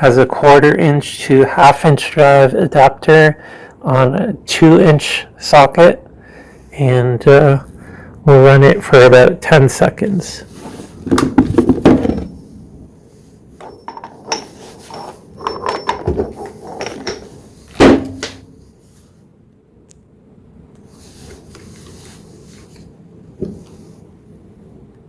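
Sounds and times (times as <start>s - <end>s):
faint background noise: 0.0s - 25.0s
metal tools clinking and knocking: 13.6s - 17.4s.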